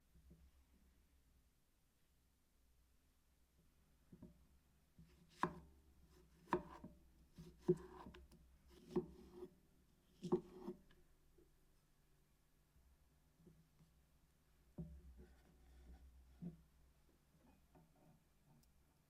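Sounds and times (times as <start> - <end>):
knife cutting on cutting board: 5.3 - 5.6, 6.3 - 9.5, 10.2 - 10.8.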